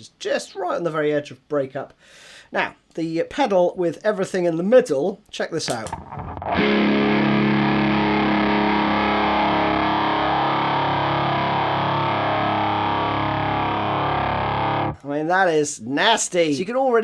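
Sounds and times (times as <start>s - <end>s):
distorted electric guitar chord: 5.9s - 15.0s.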